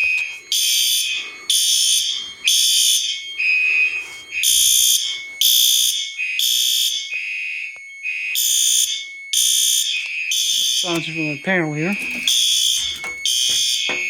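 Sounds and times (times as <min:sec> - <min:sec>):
fire alarm horn blasts: 0:00.0 - 0:14.0
thin steady high tone: 0:10.0 - 0:14.0.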